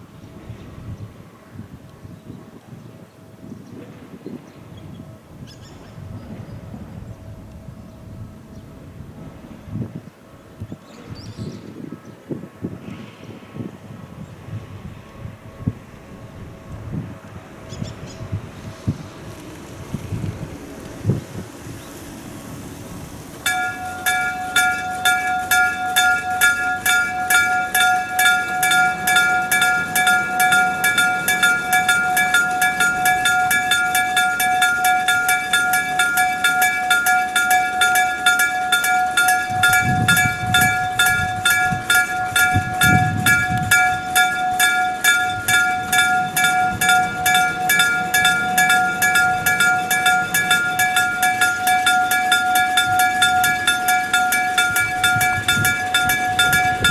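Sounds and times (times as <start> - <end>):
level crossing bell ringing rapidly: 23.4 - 56.9.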